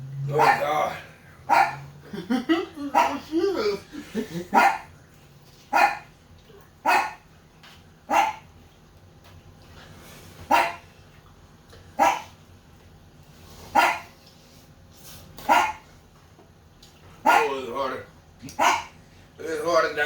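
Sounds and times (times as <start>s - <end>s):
dog barking: 0.3s - 1.9s, 2.8s - 3.3s, 4.5s - 4.9s, 5.7s - 6.1s, 6.8s - 7.2s, 8.1s - 8.5s, 10.5s - 10.9s, 12.0s - 12.4s, 13.7s - 14.2s, 15.4s - 15.9s, 17.2s - 17.6s, 18.5s - 19.0s.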